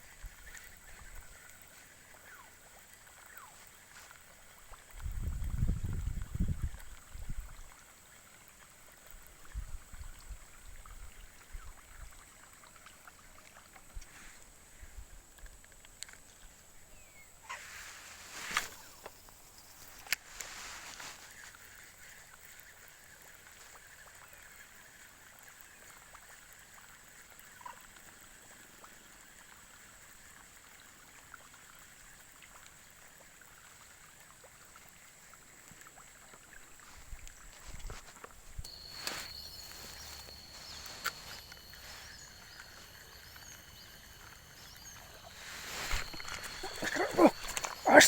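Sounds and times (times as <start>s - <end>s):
steady high hiss: 38.6s - 48.0s.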